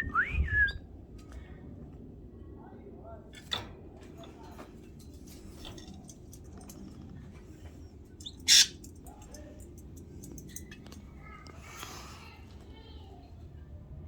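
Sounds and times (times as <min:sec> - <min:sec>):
canaries chirping: 0:08.2 - 0:08.9.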